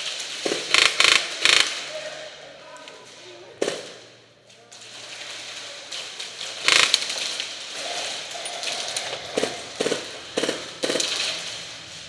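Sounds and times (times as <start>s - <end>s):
airsoft guns firing bursts: 0.0s - 2.0s, 6.6s - 7.4s, 8.1s - 11.7s.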